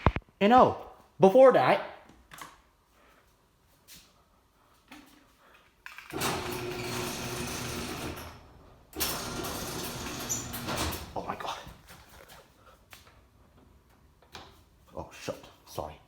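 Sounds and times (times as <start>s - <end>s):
garage door opener motor humming: 6.1s - 11.3s.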